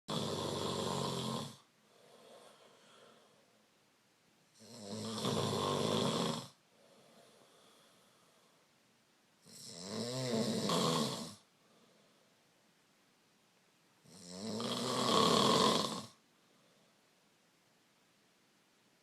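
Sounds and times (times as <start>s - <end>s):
person snoring loudly: 0.1s - 3.1s, 4.5s - 6.6s, 9.4s - 11.5s, 14.0s - 16.2s
quiet breathing: 0.1s - 9.9s, 10.7s - 12.9s, 14.0s - 17.7s.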